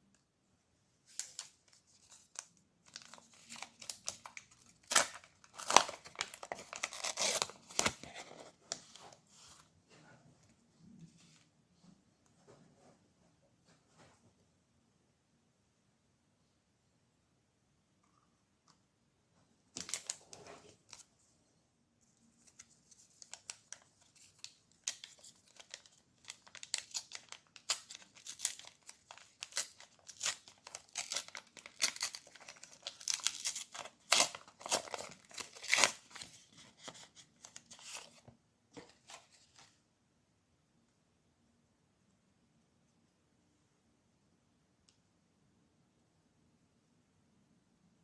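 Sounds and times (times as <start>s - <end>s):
packaging crinkling: 2.3s - 8.4s, 22.5s - 37.1s
packaging tearing: 3.0s - 8.2s, 23.3s - 36.3s.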